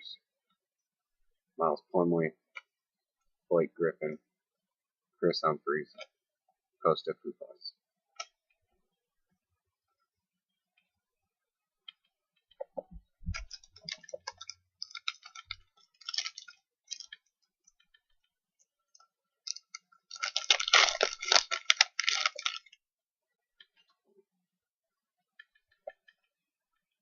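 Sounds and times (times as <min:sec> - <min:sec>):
plastic wrapper crinkling: 0:13.3 - 0:17.2, 0:19.4 - 0:22.8
wrapper tearing open: 0:13.4 - 0:17.1, 0:19.5 - 0:22.8.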